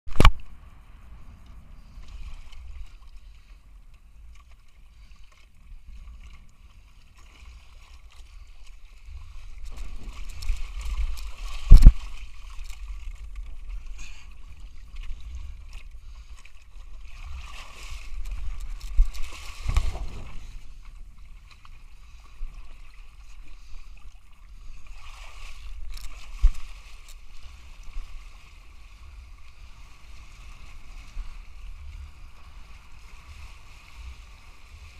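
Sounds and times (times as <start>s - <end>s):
wind rumbling on microphone: 0.1s - 4.4s, 8.3s - 23.8s
water splashing and sloshing: 0.1s - 34.9s.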